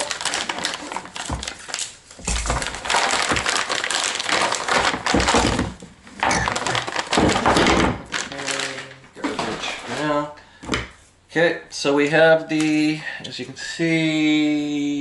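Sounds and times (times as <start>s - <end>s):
plastic bag crinkling: 0.0s - 10.4s.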